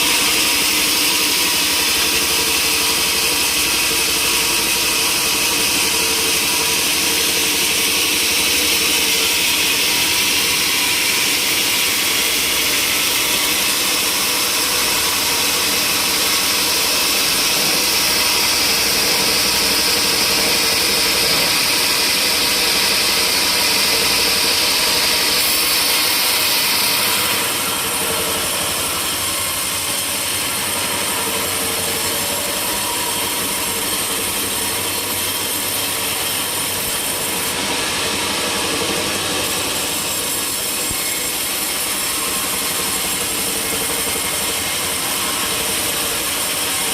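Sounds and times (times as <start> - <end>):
saw cutting through log: 0.0 - 46.9.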